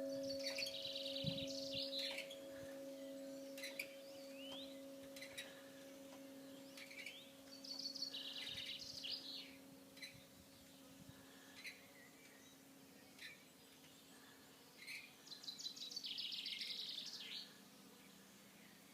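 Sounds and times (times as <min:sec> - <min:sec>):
small bird chirping: 0:00.0 - 0:05.5, 0:06.6 - 0:10.7
church bell hum: 0:00.0 - 0:11.8.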